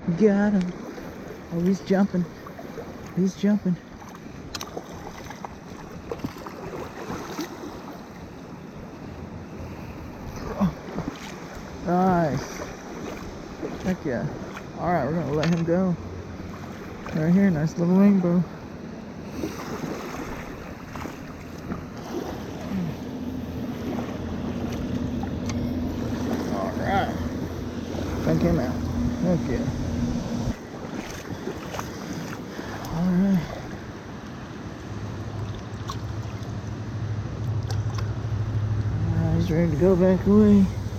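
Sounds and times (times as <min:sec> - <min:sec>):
river water flowing: 0:00.0 - 0:40.9
wind buffeting microphone: 0:18.4 - 0:32.3.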